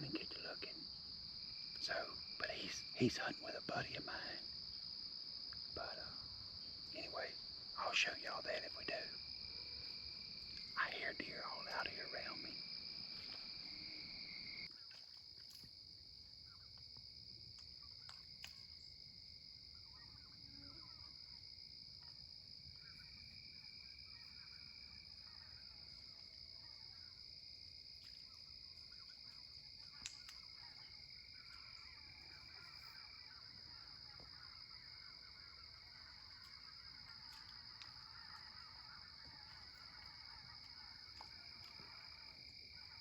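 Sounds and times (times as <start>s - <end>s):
high insect chorus: 0.0s - 43.0s
faint chirps: 1.6s - 4.8s, 5.6s - 15.7s.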